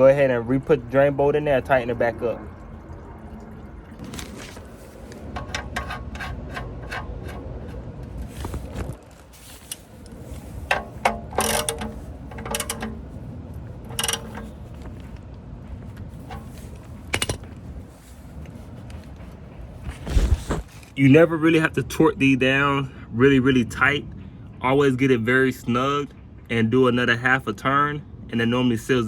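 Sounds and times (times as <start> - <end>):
ratchet wrench clicking: 10.7 - 13.0, 13.9 - 14.6.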